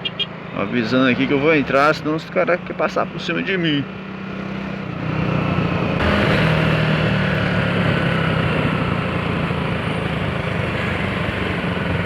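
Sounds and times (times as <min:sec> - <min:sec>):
motorcycle engine running: 0:03.3 - 0:12.0.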